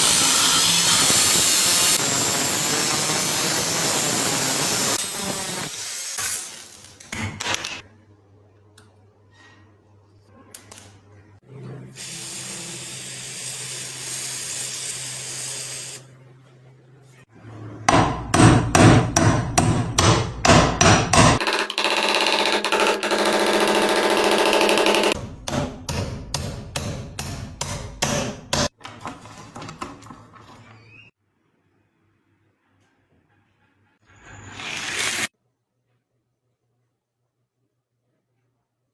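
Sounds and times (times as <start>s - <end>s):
power tool whirring: 34.3s - 35.3s.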